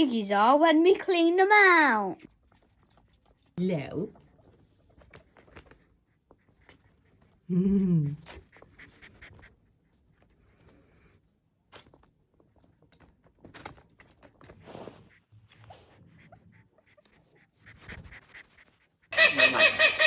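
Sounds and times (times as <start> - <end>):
pig call rising and falling: 19.2 - 20.0.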